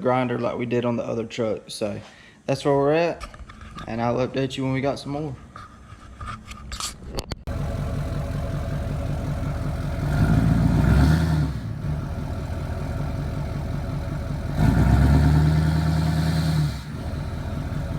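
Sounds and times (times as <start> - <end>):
engine idling and revving: 7.5 - 17.9.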